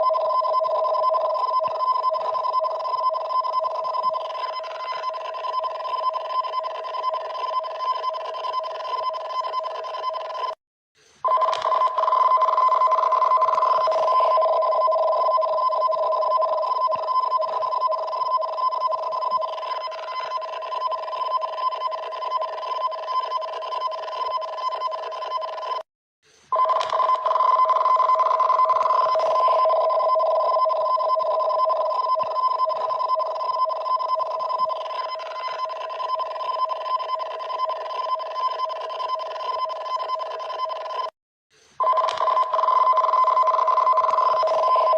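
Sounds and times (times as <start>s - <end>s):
two-tone alert signal: 11.3s - 25.8s, 26.6s - 41.1s, 41.8s - 44.9s.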